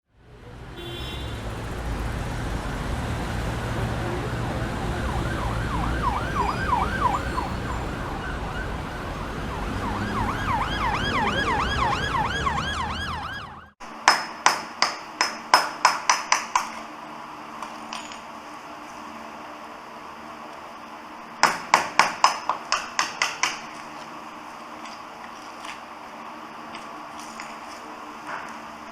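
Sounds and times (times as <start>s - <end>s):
emergency siren yelping: 3.7s - 13.8s.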